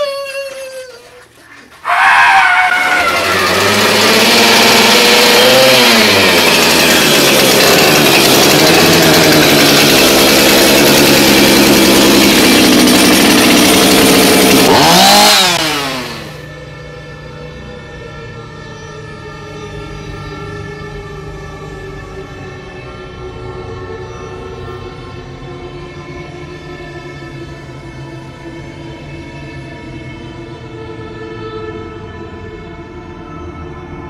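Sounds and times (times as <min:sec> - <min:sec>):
chainsaw running at high revs: 0:02.3 - 0:16.5.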